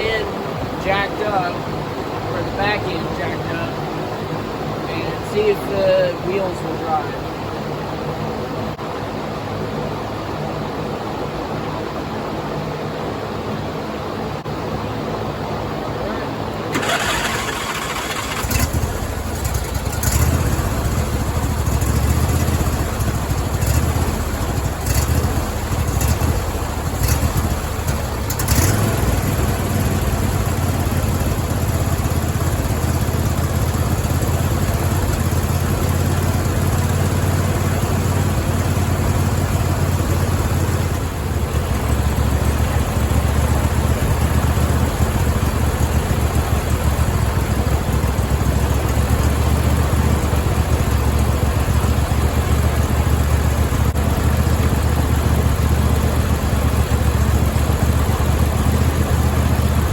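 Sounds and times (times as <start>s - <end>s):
lawn tractor engine running: 16.6s - 59.9s.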